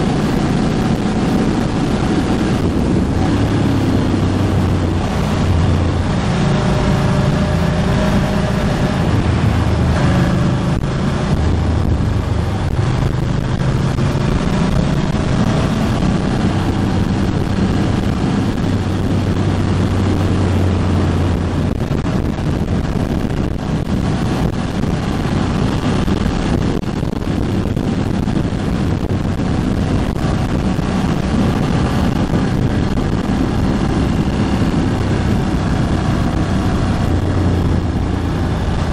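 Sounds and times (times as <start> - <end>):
motorcycle engine running: 0.0 - 38.9
wind on microphone: 0.0 - 38.9.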